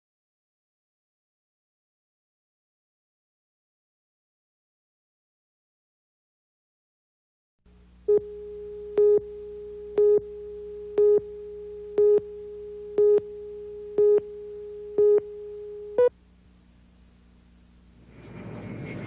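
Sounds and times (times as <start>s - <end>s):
electronic beeps: 8.1s - 16.1s
steady electronic tone: 8.1s - 16.1s.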